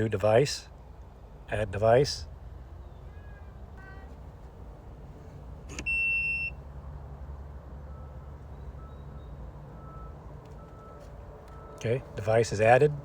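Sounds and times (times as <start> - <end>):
loud high steady beep: 5.9 - 6.6.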